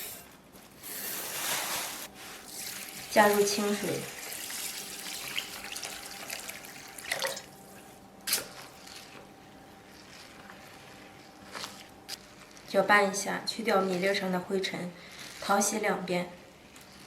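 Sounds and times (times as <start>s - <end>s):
water pouring into a bowl: 2.5s - 7.5s.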